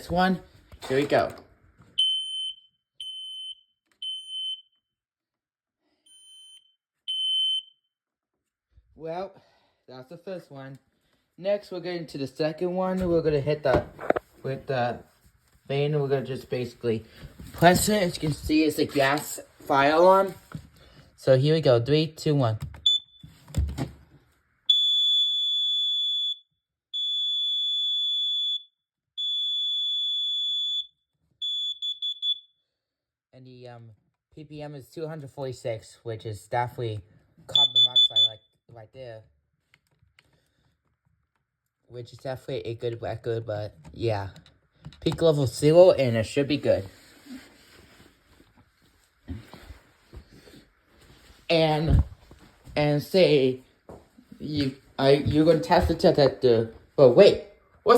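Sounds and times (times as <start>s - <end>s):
alarm high-pitched beeps: 2.0s - 4.6s, 6.1s - 7.7s, 37.5s - 38.4s
smoke alarm beeps: 2.0s - 4.8s, 6.1s - 7.8s, 22.8s - 23.4s, 24.7s - 32.6s, 37.5s - 38.4s.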